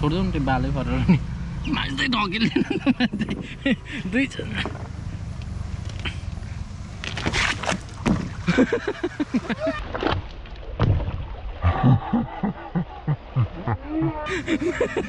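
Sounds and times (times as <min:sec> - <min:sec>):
water splashing: 0:06.9 - 0:15.0
knocks against boat hull: 0:07.1 - 0:08.4.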